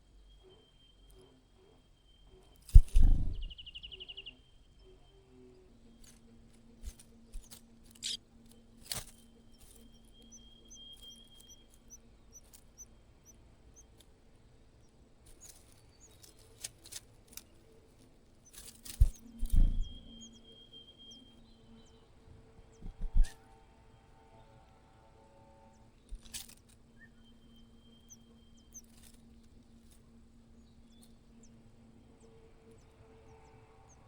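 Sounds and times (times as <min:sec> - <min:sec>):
small birds cheeping: 0:00.0 - 0:34.0
scattered clicks: 0:06.8 - 0:09.2.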